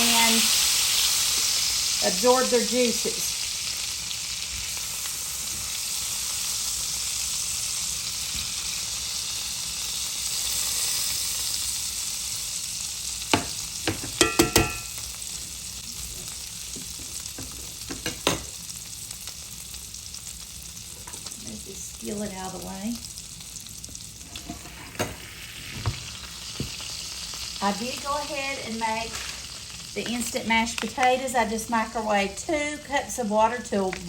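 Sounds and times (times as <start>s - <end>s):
steaks sizzling in a skillet: 0.0s - 34.0s
utensil clinking against pan: 13.9s - 14.9s.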